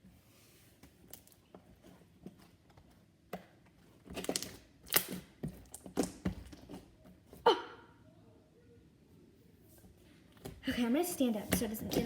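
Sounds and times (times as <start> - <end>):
slime squished by hand: 4.2 - 6.6.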